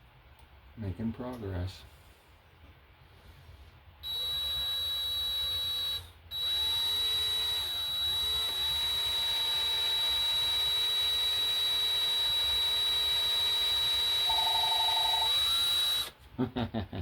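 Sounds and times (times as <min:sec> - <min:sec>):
electric drill whining: 0:04.0 - 0:16.2.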